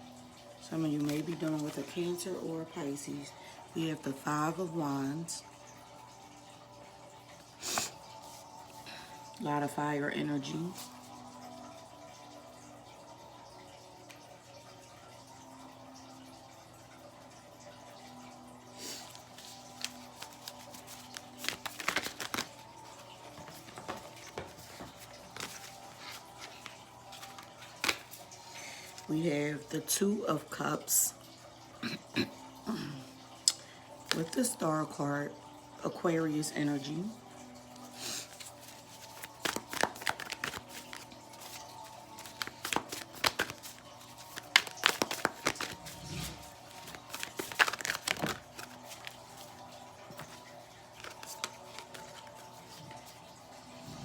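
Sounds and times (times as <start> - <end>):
soft background music: 0.0 - 54.0
cards rustling: 0.9 - 2.0, 18.9 - 29.1, 37.9 - 53.2
card snaps: 21.4 - 22.5, 39.4 - 41.0, 42.2 - 43.7.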